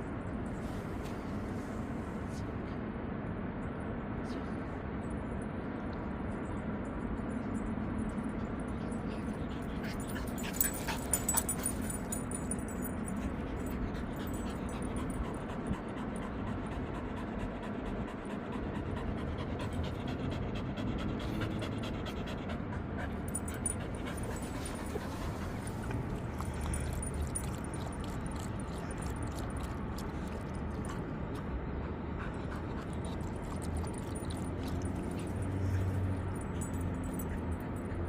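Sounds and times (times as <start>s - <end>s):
dog panting: 8.8s - 38.0s.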